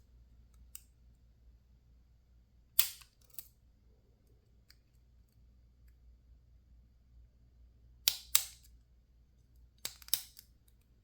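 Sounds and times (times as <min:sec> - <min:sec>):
lock picks clicking in padlock: 0:09.8 - 0:10.6.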